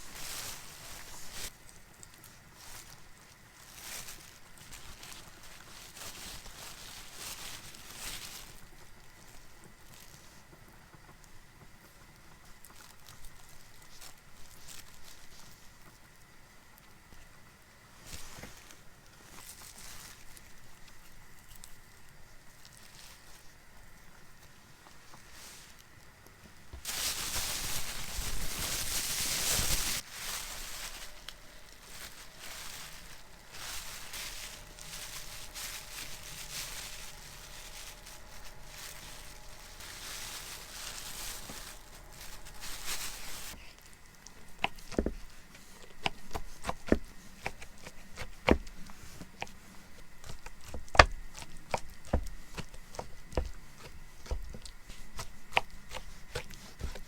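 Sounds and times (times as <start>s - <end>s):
soft steady noise with ticks: 1.5s - 26.6s.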